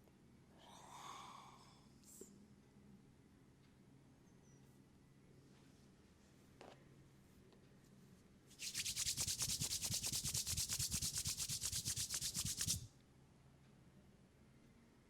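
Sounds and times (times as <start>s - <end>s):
hands rubbing fast: 8.6s - 12.9s.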